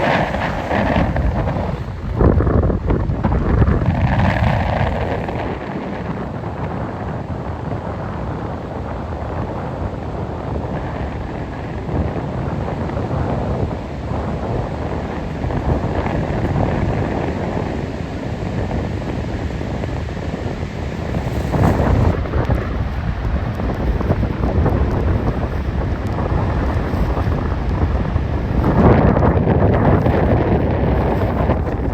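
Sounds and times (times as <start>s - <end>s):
surf breaking: 0.0s - 6.7s, 10.6s - 17.9s, 20.5s - 31.9s
wind buffeting microphone: 0.0s - 31.9s.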